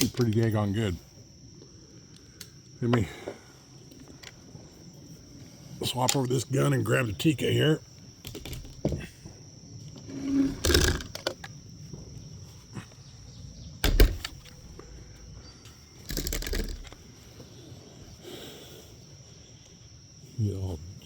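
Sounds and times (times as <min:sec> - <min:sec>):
crickets chirring: 0:00.0 - 0:21.0
rifle knocking and clattering: 0:13.8 - 0:14.6, 0:16.0 - 0:17.0.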